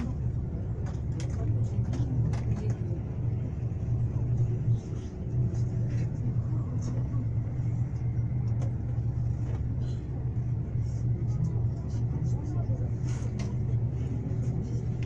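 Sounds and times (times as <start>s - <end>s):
vehicle engine and road rumble: 0.0s - 15.0s.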